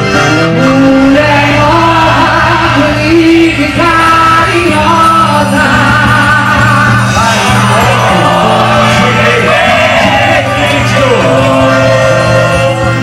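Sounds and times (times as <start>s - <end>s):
live band music: 0.0s - 13.0s
steady bass line: 0.0s - 13.0s.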